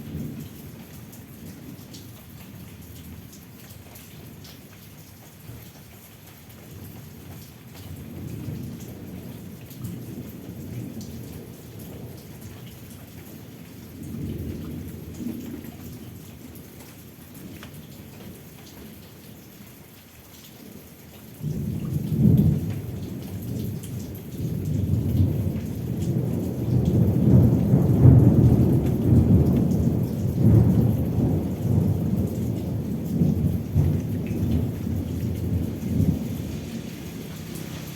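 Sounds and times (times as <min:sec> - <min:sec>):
steady rain: 0:00.0 - 0:37.9
thunder rumbling: 0:21.5 - 0:37.9.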